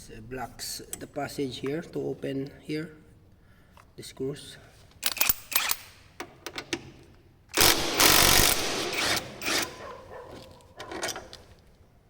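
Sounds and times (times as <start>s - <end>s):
tools clicking and knocking: 5.0s - 9.8s, 10.4s - 11.5s
loud rattling: 7.6s - 9.7s.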